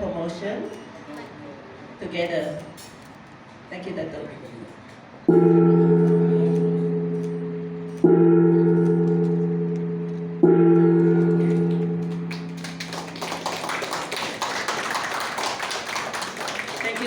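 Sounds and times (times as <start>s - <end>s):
ceremonial gong ringing: 5.3s - 14.1s
applause: 11.2s - 17.0s.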